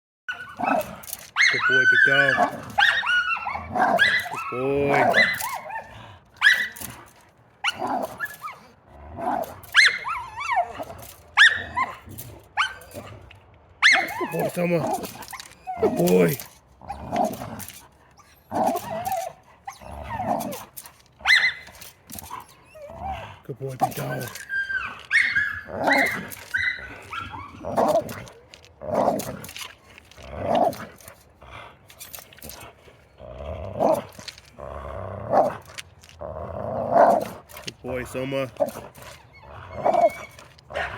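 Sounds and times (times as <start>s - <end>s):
large dog howling calls: 0.3s - 6.9s, 13.8s - 16.4s, 23.9s - 29.2s, 39.3s - 40.9s.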